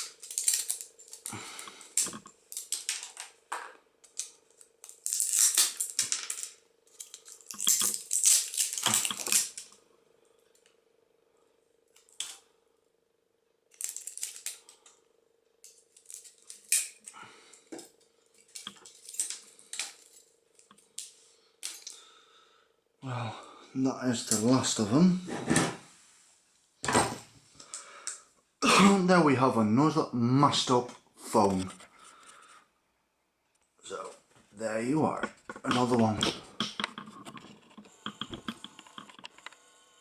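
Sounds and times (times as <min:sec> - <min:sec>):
plastic and metal pieces clattering: 0:00.0 - 0:01.3, 0:02.0 - 0:09.7, 0:13.7 - 0:14.7, 0:15.7 - 0:17.1, 0:18.4 - 0:20.7
faint steady hum: 0:00.0 - 0:40.0.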